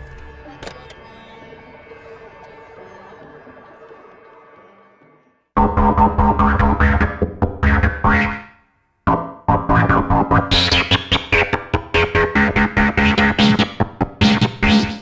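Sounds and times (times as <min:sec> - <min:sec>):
electronic dance music: 0:05.6 - 0:08.5, 0:09.1 - 0:15.0.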